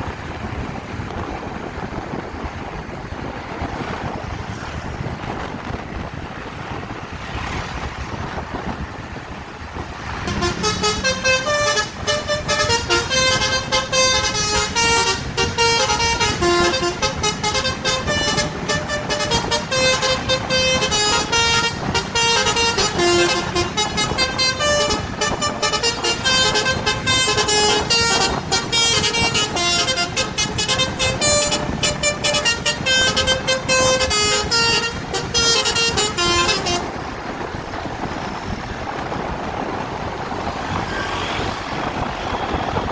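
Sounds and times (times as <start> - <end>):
wind and road noise: 0.0 - 42.9
multi-tone bus horn melody: 9.8 - 42.9.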